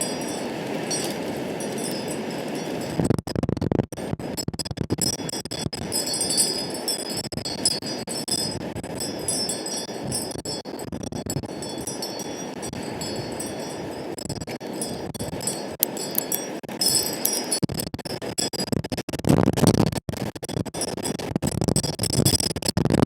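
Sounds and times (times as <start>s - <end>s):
high tinkling rings: 0.0s - 3.1s, 5.0s - 17.7s
wind buffeting microphone: 0.0s - 17.9s.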